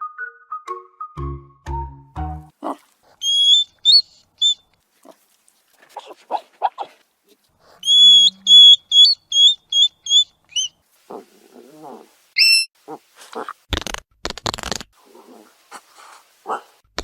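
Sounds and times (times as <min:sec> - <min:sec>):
hedgehog snuffling huffs: 0:02.6 - 0:03.4, 0:05.0 - 0:08.6, 0:15.0 - 0:16.7
hedgehog squeaking: 0:03.2 - 0:04.7, 0:07.8 - 0:10.8, 0:12.4 - 0:13.5.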